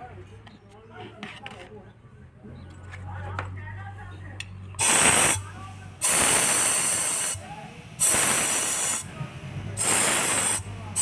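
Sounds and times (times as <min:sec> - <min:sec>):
pressurised spray hissing: 0:04.8 - 0:11.0.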